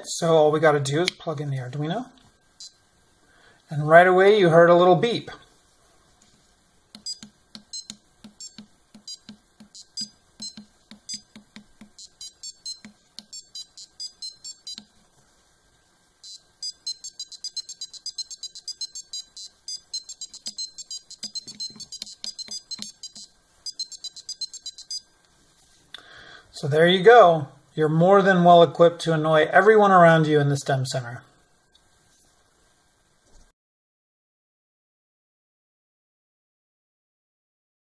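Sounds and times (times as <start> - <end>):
buzzer playing beeping tune: 7.0 - 11.4, 12.0 - 14.9, 16.2 - 25.0.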